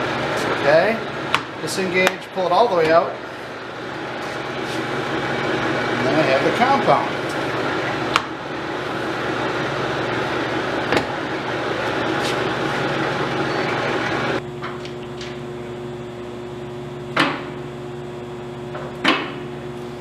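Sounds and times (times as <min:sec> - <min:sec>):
lathe humming: 0:00.0 - 0:20.0.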